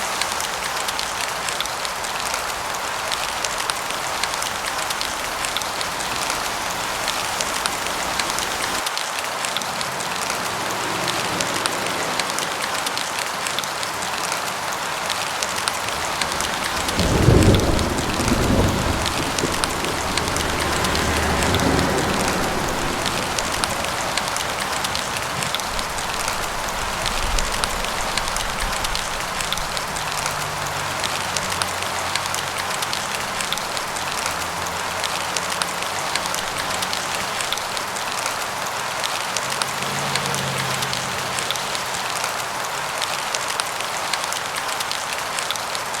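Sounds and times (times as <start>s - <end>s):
rain pattering: 0.0s - 46.0s
thunder rumbling: 15.8s - 31.8s.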